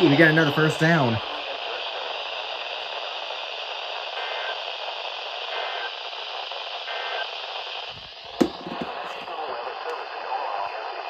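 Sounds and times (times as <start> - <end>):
radio static hiss: 0.0 - 11.0.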